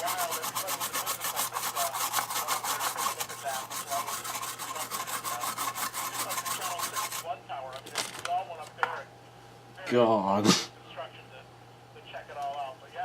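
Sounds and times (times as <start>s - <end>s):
brush scrubbing circuit board: 0.0s - 7.3s.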